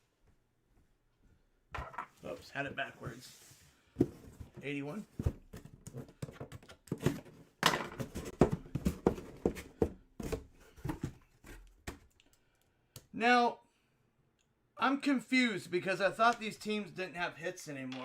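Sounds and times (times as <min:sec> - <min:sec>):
card box taps and rustles: 0:05.2 - 0:12.0.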